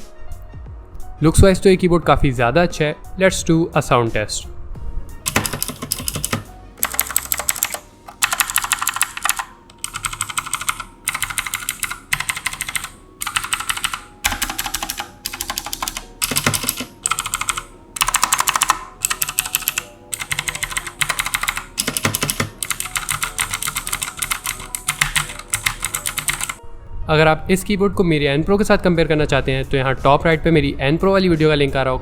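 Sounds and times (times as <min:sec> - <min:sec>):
rapid typing on clicky keyboard: 0:05.3 - 0:26.6.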